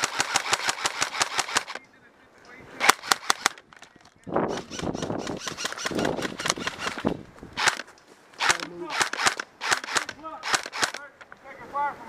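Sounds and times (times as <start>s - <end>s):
airsoft gun shots: 0.0s - 1.8s, 2.8s - 3.6s, 8.4s - 11.1s.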